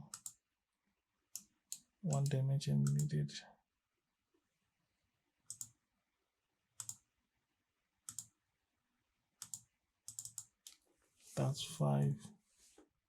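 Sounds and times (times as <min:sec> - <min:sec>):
computer mouse clicks: 0:00.1 - 0:00.4, 0:01.3 - 0:03.1, 0:05.5 - 0:05.8, 0:06.8 - 0:07.0, 0:08.0 - 0:08.4, 0:09.4 - 0:10.8.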